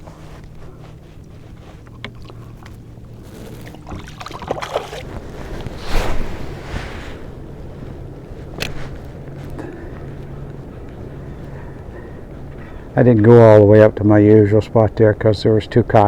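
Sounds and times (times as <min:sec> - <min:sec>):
water splashing around a kayak: 0:00.0 - 0:10.6
wind on microphone: 0:00.0 - 0:13.5
steady low hum: 0:00.0 - 0:16.0.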